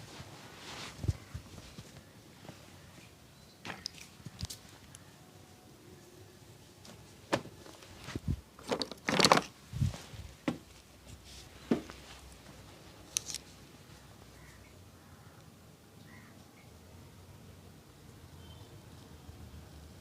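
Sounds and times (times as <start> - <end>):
hands slapping and rubbing head: 3.6 - 4.8, 6.8 - 12.3.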